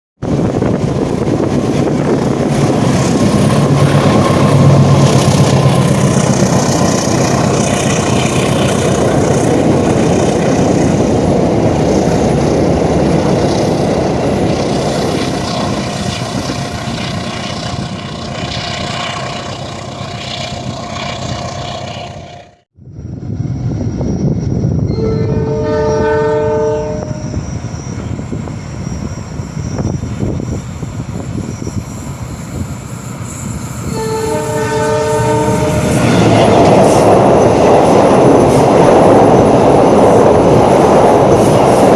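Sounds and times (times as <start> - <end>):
diesel train passing: 0.2 - 41.9
train horn blast: 24.9 - 27.5, 33.8 - 37.0.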